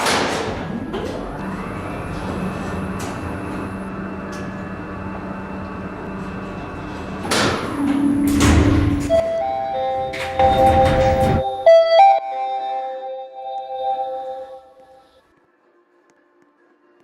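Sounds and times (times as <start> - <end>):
elevator doors sliding open: 0.0 - 11.8
elevator cabin humming: 0.0 - 15.2.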